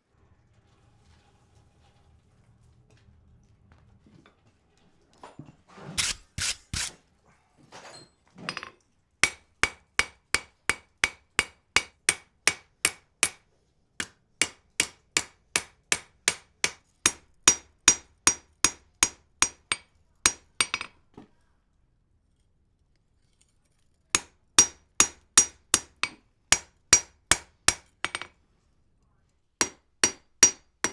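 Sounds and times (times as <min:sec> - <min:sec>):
hammer ringing on anvil: 0:24.6 - 0:25.9, 0:29.6 - 0:30.9.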